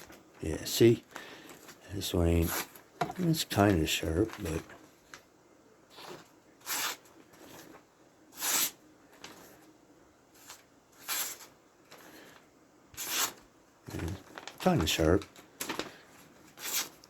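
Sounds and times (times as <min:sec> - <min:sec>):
utility knife slicing paper: 0:05.9 - 0:07.1, 0:08.3 - 0:08.8, 0:10.4 - 0:11.5, 0:12.9 - 0:13.4, 0:16.6 - 0:17.0.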